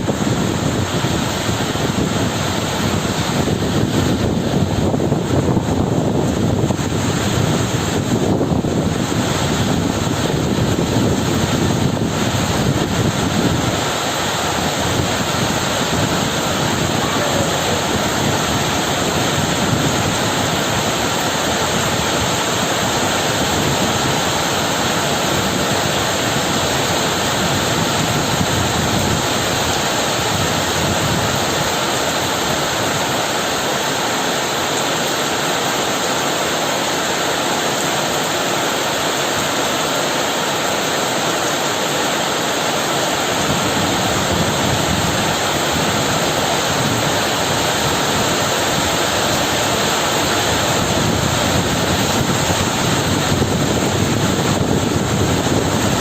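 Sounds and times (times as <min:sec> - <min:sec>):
heavy rain falling: 0:00.0 - 0:56.0.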